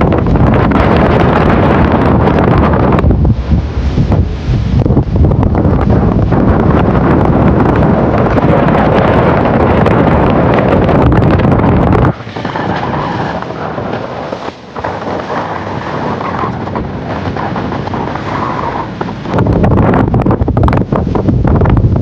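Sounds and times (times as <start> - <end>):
low rumbling and crackling: 0.0 - 22.0
steady rushing noise: 0.0 - 22.0
wind buffeting microphone: 0.0 - 22.0.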